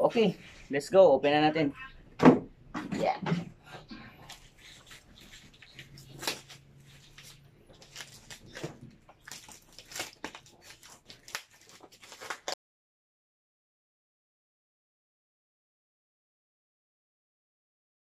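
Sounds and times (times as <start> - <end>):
package being opened by hand: 4.3 - 12.6.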